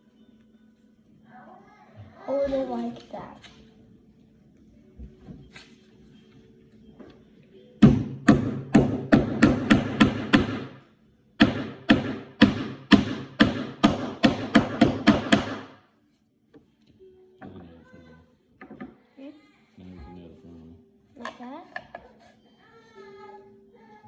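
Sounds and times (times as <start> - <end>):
hammer driving nail into wood: 7.8 - 10.8, 11.4 - 15.8.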